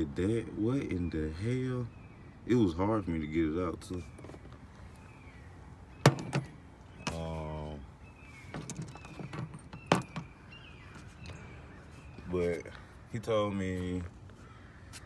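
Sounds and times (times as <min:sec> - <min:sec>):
sharp handling clicks and knocks: 0:06.0 - 0:07.2, 0:08.5 - 0:10.3.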